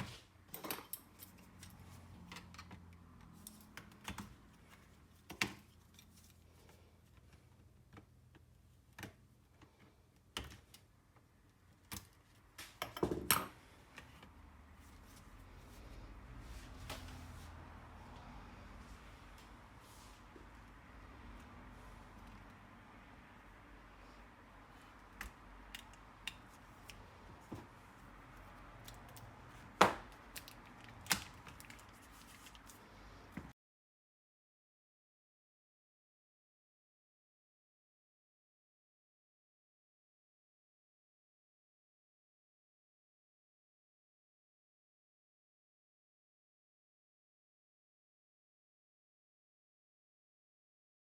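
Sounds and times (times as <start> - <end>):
tools clicking and knocking: 0.5 - 4.3
laptop parts and tools clicking: 24.8 - 32.9.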